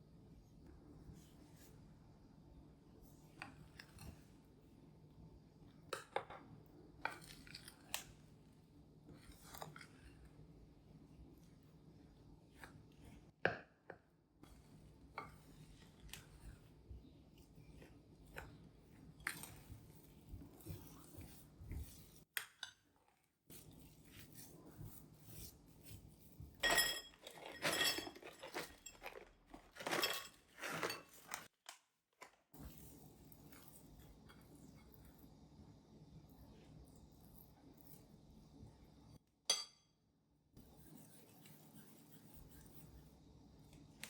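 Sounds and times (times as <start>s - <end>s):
kitchenware clattering and clinking: 26.6s - 31.5s.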